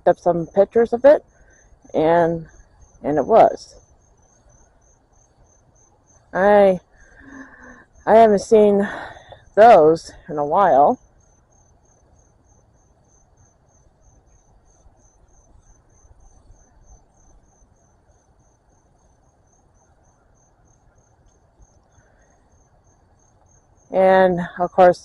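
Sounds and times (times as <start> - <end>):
cricket chirping: 0.0 - 25.0.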